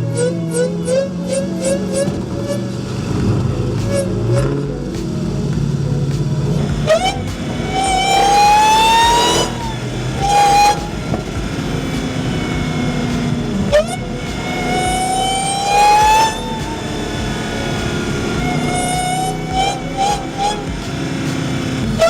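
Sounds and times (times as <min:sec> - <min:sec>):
car whine climbing in pitch: 0:00.0 - 0:22.0
low steady drone: 0:00.0 - 0:22.0.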